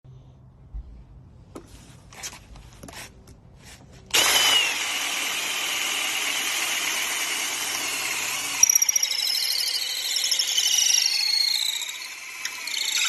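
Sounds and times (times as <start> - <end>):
cordless power drill whirring: 4.1 - 13.0.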